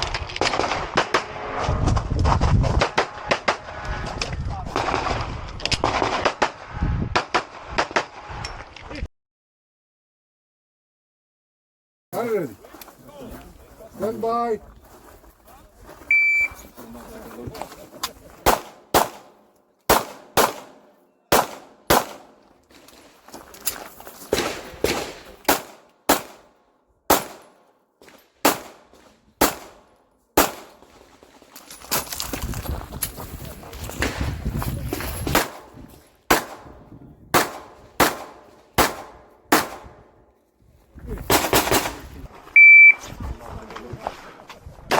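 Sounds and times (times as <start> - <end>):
pistol shots: 18.4 - 22.4, 24.3 - 27.7, 28.4 - 30.9, 35.3 - 40.1
rustling movement: 30.6 - 36.6.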